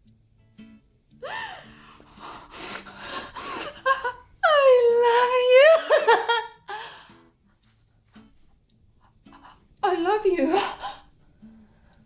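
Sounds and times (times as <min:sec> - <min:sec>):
woman wailing: 0:01.2 - 0:07.0
woman gasping and laughing: 0:01.2 - 0:07.1, 0:10.4 - 0:11.0.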